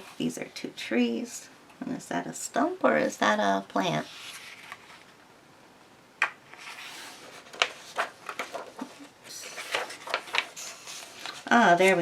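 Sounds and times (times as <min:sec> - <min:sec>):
paper pages rustling: 0:04.0 - 0:05.2, 0:06.5 - 0:12.0.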